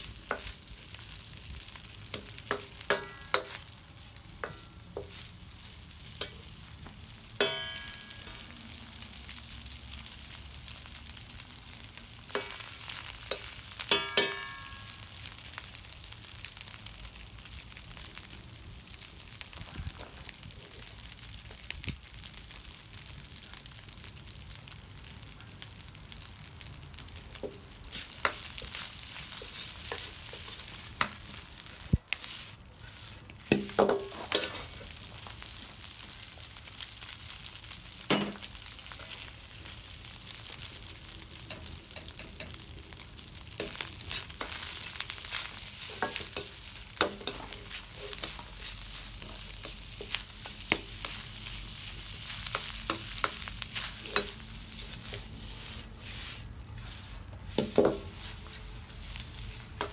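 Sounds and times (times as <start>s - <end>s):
rice sizzling in a pan: 0.0s - 59.9s
utensil scraping a pan: 27.9s - 31.2s, 52.2s - 59.9s.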